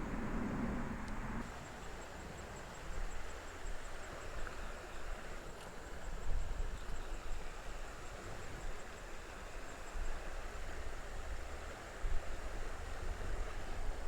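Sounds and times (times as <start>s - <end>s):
creek water rushing: 0.0s - 1.4s
wind rumbling on microphone: 0.0s - 1.4s.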